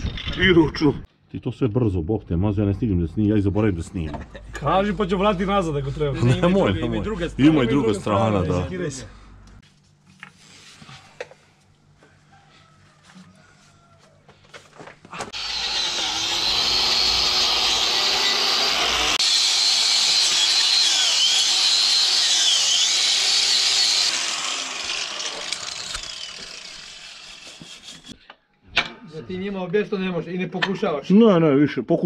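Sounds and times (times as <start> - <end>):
power tool whining: 15.3 - 28.2.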